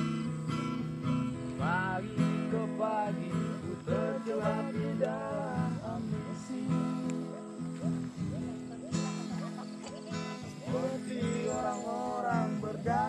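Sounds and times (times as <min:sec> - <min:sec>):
strummed acoustic guitar: 0:00.0 - 0:13.0
person singing: 0:10.5 - 0:13.0.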